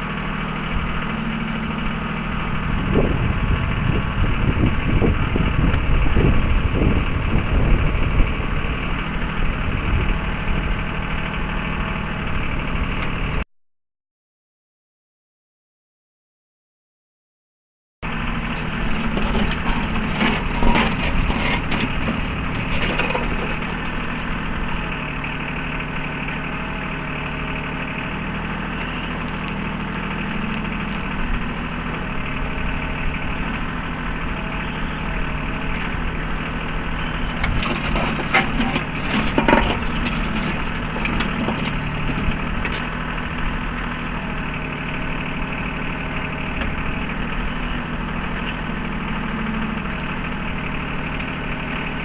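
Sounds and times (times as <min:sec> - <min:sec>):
tractor diesel engine running: 0:00.0 - 0:13.4, 0:18.0 - 0:52.0
backhoe bucket scraping ground: 0:18.1 - 0:52.0.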